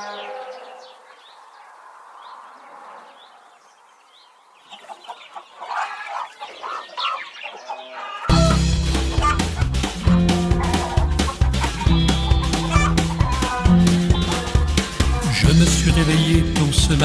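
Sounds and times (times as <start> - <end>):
chickens clucking: 4.5 - 17.0.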